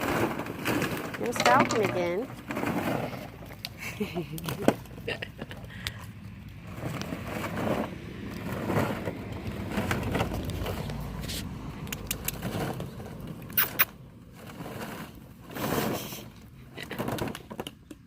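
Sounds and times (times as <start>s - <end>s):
plastic balls rustling and clattering: 0.0s - 5.4s, 6.6s - 11.2s.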